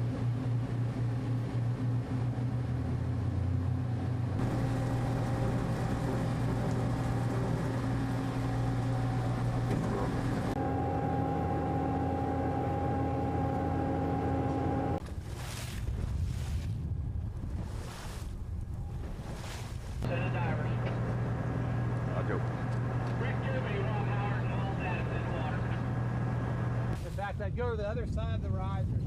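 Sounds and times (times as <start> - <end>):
ship engines droning: 0.0 - 15.1, 20.0 - 27.0
water noise: 0.0 - 27.6
wind: 0.0 - 29.0.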